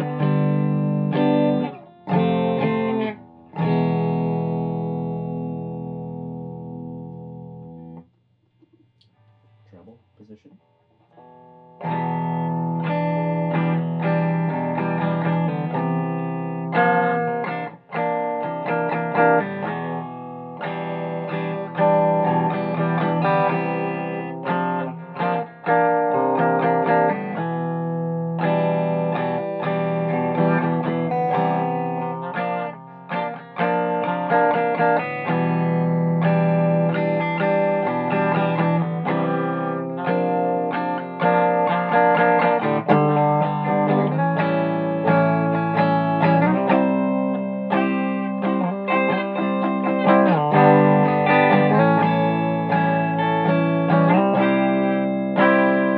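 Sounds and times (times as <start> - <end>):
electric guitar chords and riffs: 0.0 - 9.7, 11.0 - 55.9.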